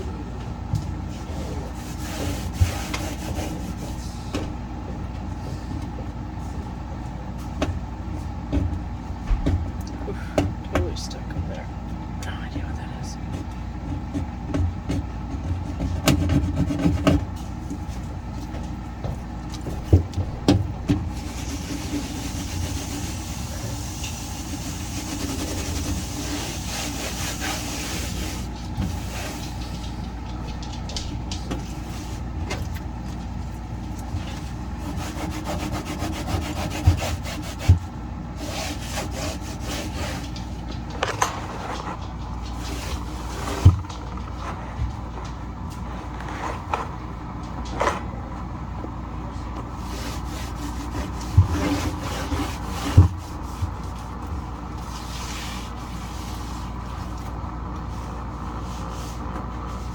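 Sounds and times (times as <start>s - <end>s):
steady low hum: 0.0s - 59.9s
cloth scrubbing fridge surfaces: 1.0s - 4.7s, 13.9s - 44.7s, 49.6s - 59.9s.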